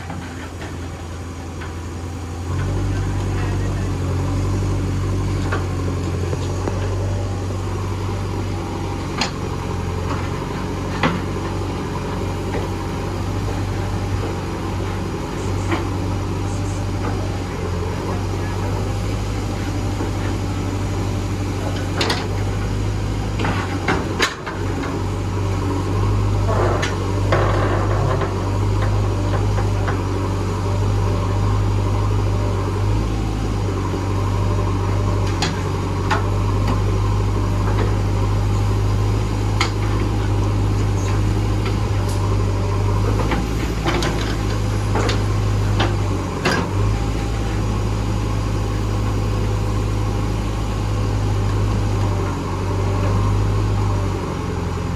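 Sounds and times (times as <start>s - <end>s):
diesel engine running: 0.0s - 54.9s
sharp knocks and clanks: 26.4s - 30.2s.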